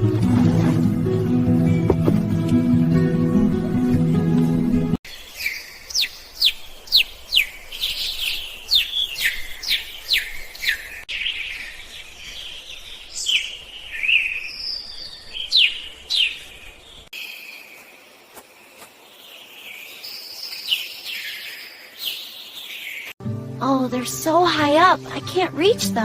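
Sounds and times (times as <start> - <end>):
songbirds singing: 5.0 - 23.2.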